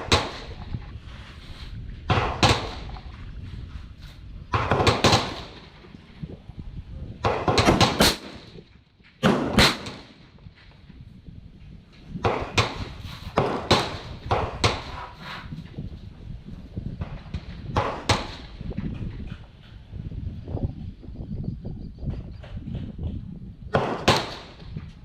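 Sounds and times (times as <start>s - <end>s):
gunshots with echo: 4.5s - 5.7s, 7.2s - 8.6s, 9.2s - 10.3s, 12.2s - 15.0s, 23.7s - 24.6s.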